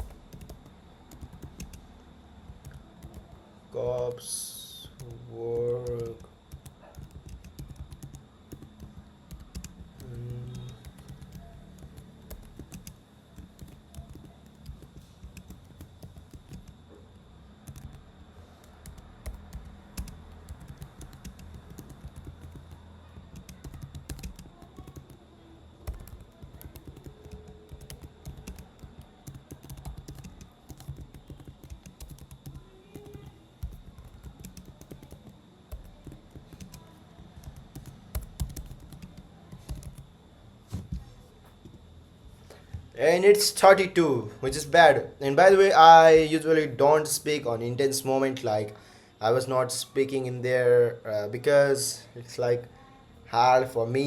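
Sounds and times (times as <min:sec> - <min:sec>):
fast typing on computer keyboard: 0:00.0 - 0:16.9, 0:17.5 - 0:40.2.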